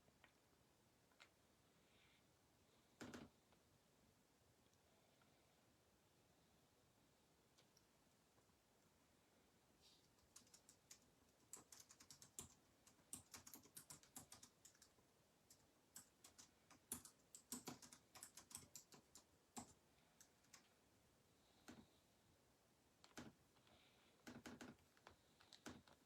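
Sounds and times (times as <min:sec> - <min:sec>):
faint typing on keyboard: 0:02.9 - 0:03.7, 0:09.8 - 0:22.0, 0:23.0 - 0:26.0.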